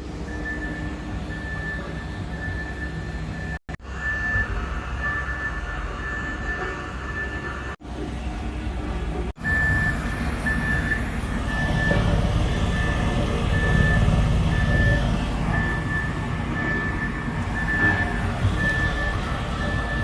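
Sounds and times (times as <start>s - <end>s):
reversing alarm beeping: 0.0s - 7.8s, 9.4s - 20.0s
diesel engine rumble: 0.0s - 20.0s.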